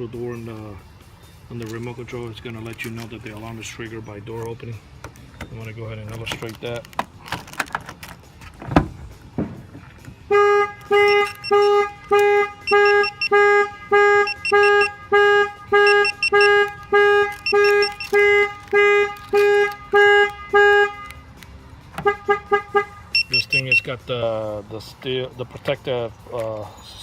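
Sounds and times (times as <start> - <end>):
van horn honking in pulses: 10.3 - 21.2, 22.0 - 23.4.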